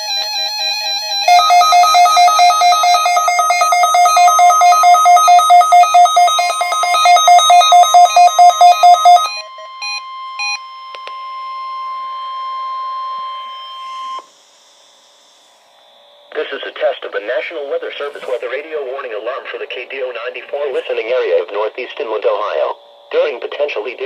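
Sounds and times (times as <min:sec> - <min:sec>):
steady warning alarm tone: 0:00.0 - 0:15.0, 0:15.9 - 0:24.0
rapid pulsed alert beeping: 0:00.1 - 0:10.6.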